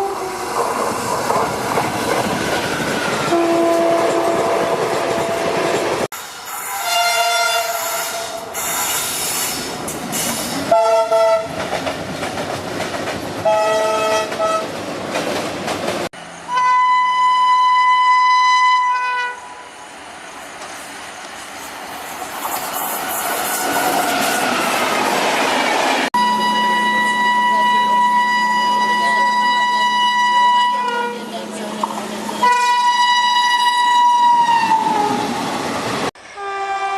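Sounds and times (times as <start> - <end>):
higher-pitched train horn: 0.0 - 0.4, 3.3 - 9.2, 10.7 - 11.6, 13.4 - 14.7, 16.5 - 19.7, 26.2 - 31.7, 32.4 - 35.2, 36.2 - 36.9
train running on rails: 0.0 - 36.9
locomotive horn blasts: 3.3 - 5.8, 6.8 - 8.6, 10.7 - 11.5, 13.4 - 14.6, 16.5 - 19.6, 26.2 - 31.3, 32.4 - 34.6, 36.4 - 36.9.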